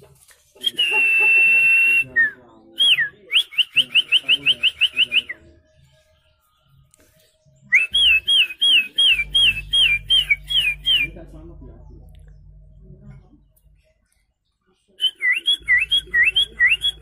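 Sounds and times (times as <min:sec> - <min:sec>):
man whistling birdsong: 0:00.6 - 0:05.6, 0:07.6 - 0:11.2, 0:15.0 - 0:17.0.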